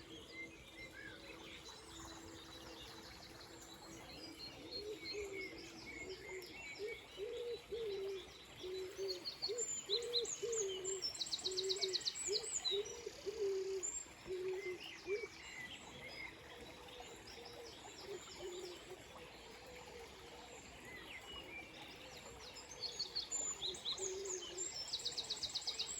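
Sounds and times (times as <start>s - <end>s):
songbirds chirping and trilling: 0.0s - 25.9s
low cooing bird call: 4.7s - 15.4s, 23.9s - 24.8s.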